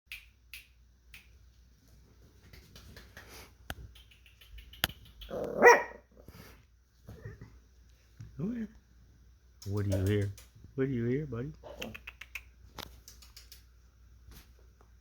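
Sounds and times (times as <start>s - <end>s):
puppies clicking and scuffling: 2.0s - 5.6s, 9.6s - 10.6s, 11.8s - 13.8s
puppy bark: 5.3s - 6.1s.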